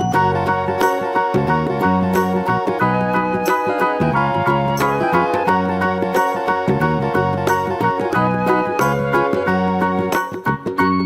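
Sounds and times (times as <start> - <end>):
upbeat plucked melody music: 0.0 - 11.0.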